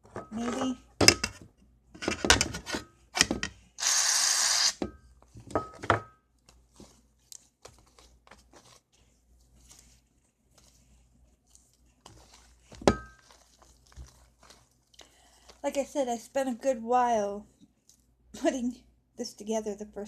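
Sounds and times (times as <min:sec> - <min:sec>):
hands working sticky slime: 0:06.3 - 0:16.0.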